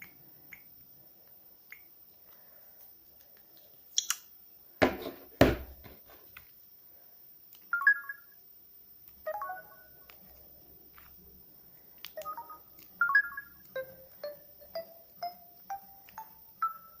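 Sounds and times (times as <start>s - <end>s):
electronic ringtone from phone speaker: 7.8s - 8.3s, 9.3s - 10.0s, 12.2s - 17.0s.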